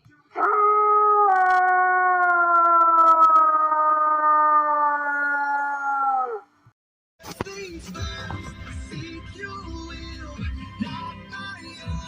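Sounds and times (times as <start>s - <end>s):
dog howling: 0.4s - 6.5s.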